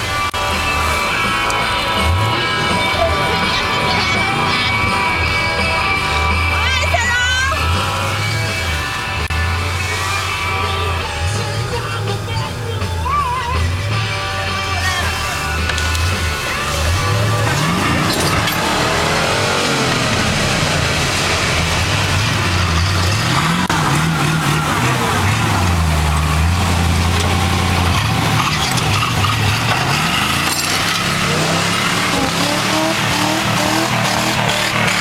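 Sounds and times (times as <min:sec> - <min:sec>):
truck engine revving: 0:00.0 - 0:35.0
steady rushing noise: 0:13.9 - 0:35.0.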